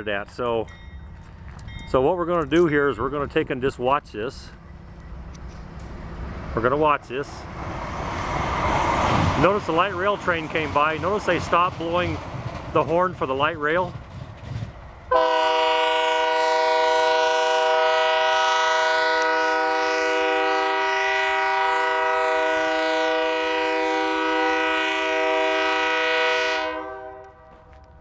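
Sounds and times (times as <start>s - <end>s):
locomotive air horn chord: 15.1s - 27.7s.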